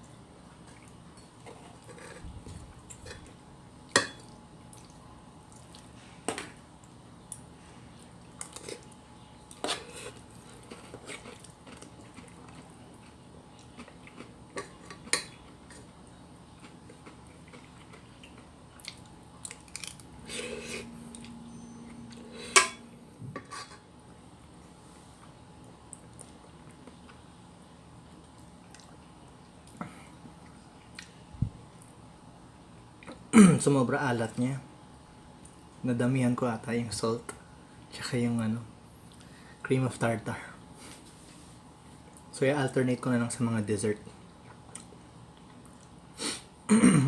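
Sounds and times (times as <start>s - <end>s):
cutlery clinking against dishes: 22.5s - 22.8s.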